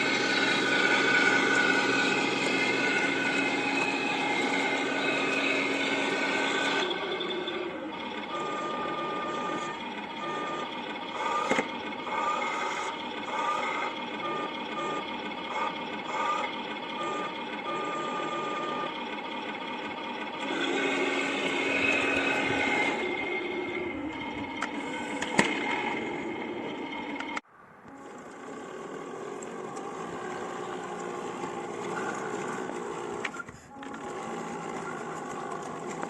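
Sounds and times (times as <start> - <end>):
electric motors whining: 0.0 - 36.0.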